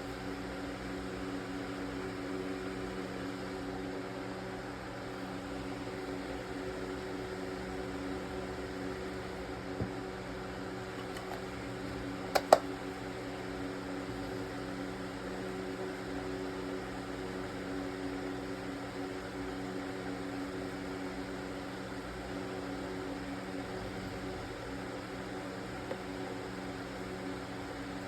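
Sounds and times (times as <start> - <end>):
mechanical hum: 0.0 - 28.0
sharp clicks: 12.4 - 12.6.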